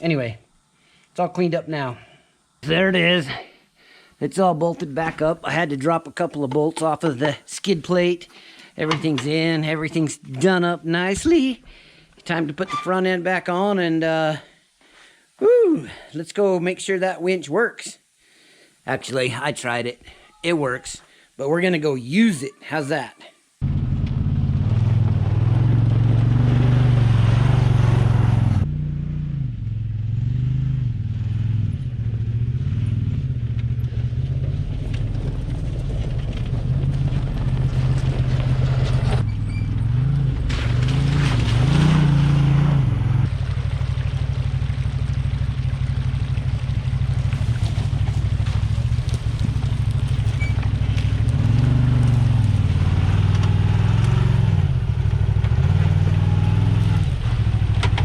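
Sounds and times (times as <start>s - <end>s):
engine revving: 23.6s - 44.8s, 47.0s - 58.0s.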